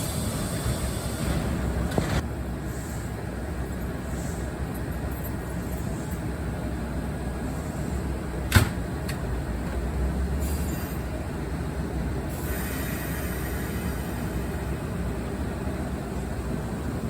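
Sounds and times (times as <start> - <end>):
hiss: 0.0 - 1.6, 12.3 - 14.7
train rumbling: 0.0 - 17.0.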